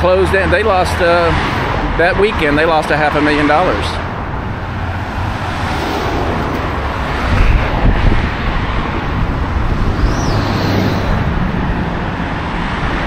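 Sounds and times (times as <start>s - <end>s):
road traffic: 0.0s - 13.0s
vehicle passing close: 0.4s - 13.0s
wind on microphone: 4.2s - 13.0s.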